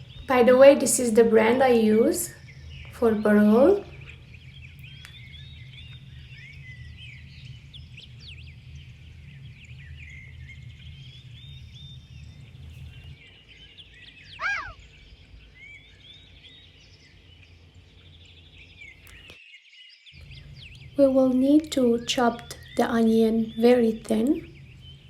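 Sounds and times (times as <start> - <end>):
low steady hum: 0.0 - 19.4, 20.2 - 25.0
small birds chirping: 0.0 - 25.0
sharp bird call: 14.3 - 14.9.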